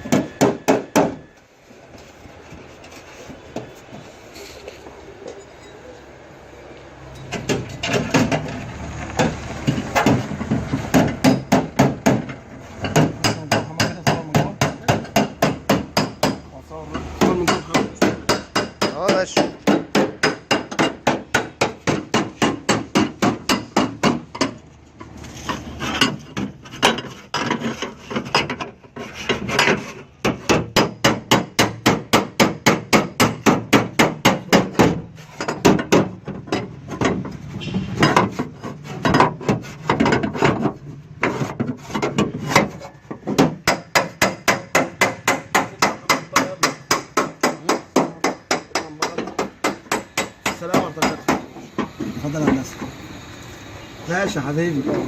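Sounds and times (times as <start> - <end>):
hammer beating sheet metal: 0.0 - 1.2, 9.7 - 24.6, 29.5 - 37.2, 38.0 - 51.6.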